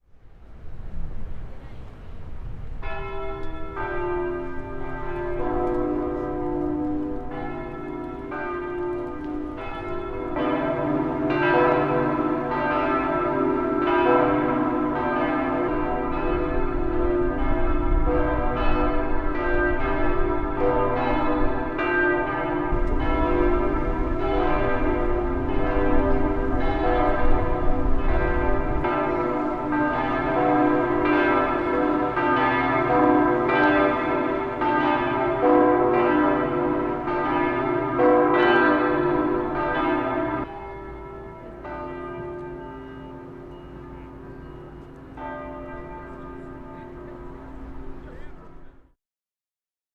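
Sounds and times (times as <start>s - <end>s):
church bells pealing: 2.8s - 48.8s.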